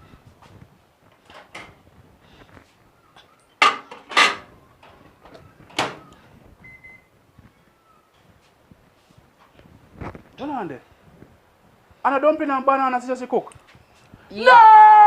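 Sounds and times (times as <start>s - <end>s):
door or cupboard banging: 3.6s - 4.5s, 5.7s - 6.1s.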